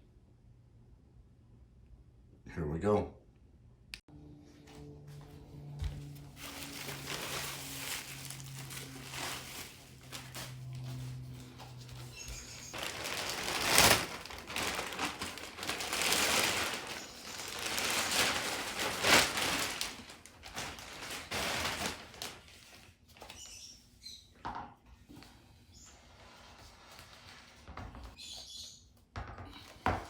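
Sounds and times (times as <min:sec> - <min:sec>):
packaging rustling and crinkling: 0:06.1 - 0:23.5.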